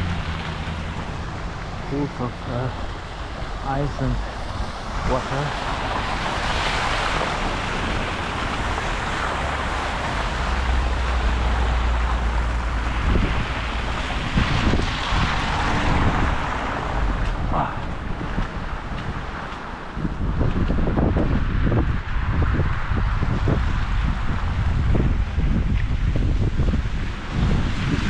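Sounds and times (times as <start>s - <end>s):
street noise hiss: 0.0s - 20.7s
wind buffeting microphone: 0.0s - 28.0s.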